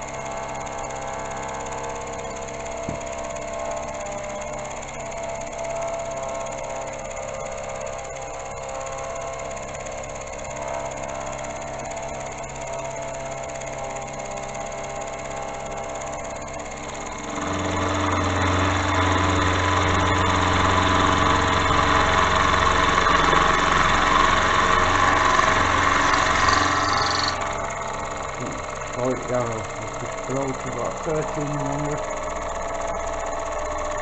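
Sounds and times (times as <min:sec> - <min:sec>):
low hum: 0:16.9 - 0:34.0
milling machine cutting steel: 0:17.1 - 0:32.2.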